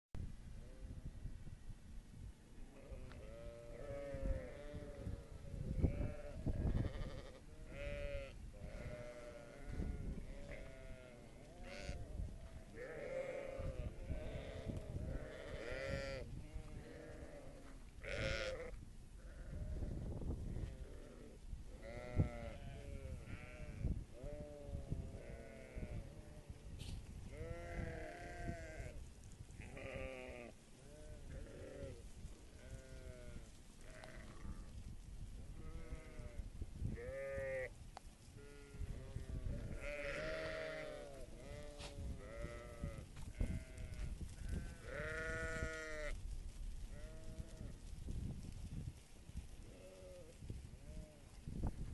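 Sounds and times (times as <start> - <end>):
livestock bleating: 2.7 - 20.0, 20.6 - 26.6, 27.3 - 29.0, 29.6 - 32.0, 32.6 - 34.7, 35.6 - 36.4, 37.0 - 37.7, 38.4 - 46.2, 46.9 - 47.7, 49.6 - 51.2.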